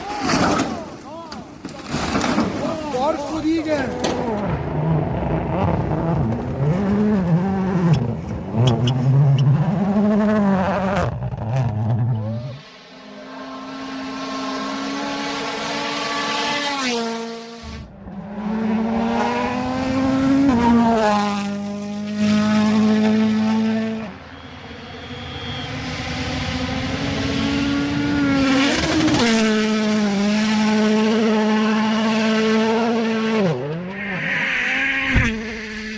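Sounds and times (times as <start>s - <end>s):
vehicle engine revving: 3.9s - 35.9s
rising steady note: 33.9s - 35.9s.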